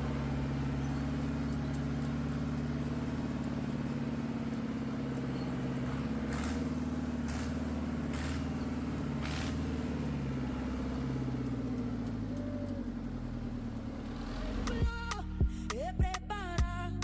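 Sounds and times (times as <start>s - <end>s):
motor vehicle hum: 0.0s - 17.0s
music with singing voice: 14.4s - 17.0s.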